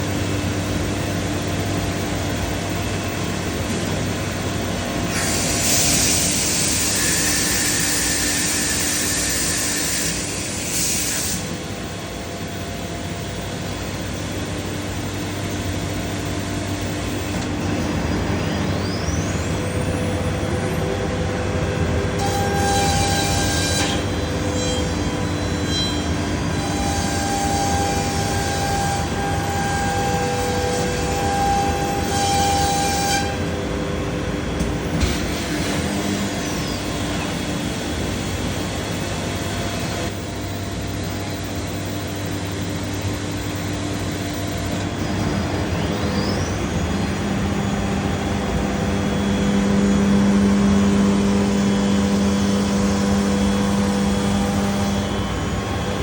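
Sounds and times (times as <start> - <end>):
router spindle whine: 0.0 - 56.0
low machine hum: 11.4 - 56.0.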